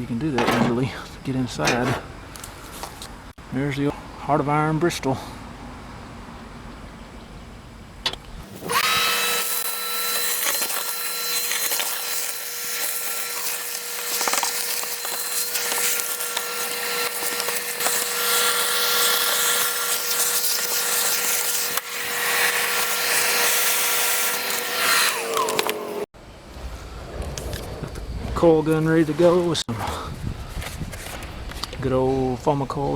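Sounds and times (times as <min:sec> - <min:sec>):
vacuum cleaner motor whine: 0:08.4 - 0:26.1.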